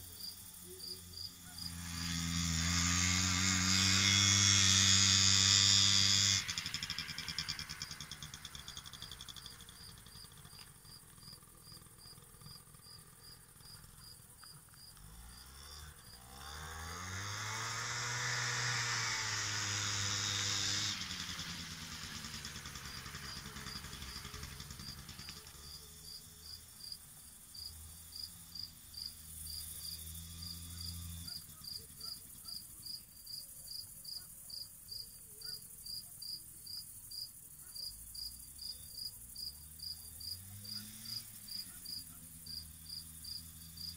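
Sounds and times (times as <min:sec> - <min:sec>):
crickets chirping: 0:00.0 - 0:01.8, 0:06.6 - 0:16.8, 0:22.0 - 0:43.9
engine running: 0:00.0 - 0:33.1, 0:39.5 - 0:43.9.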